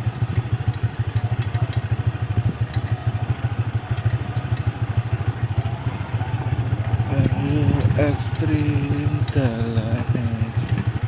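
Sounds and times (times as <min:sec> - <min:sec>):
motorcycle engine running: 0:00.0 - 0:11.0
small clicks and rattles: 0:00.1 - 0:05.8, 0:06.4 - 0:11.0.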